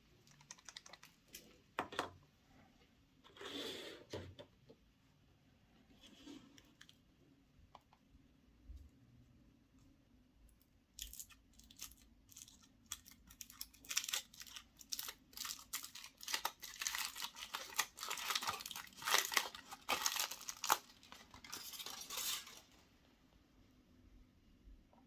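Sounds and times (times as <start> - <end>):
foil wrapper crinkling: 11.6 - 22.8.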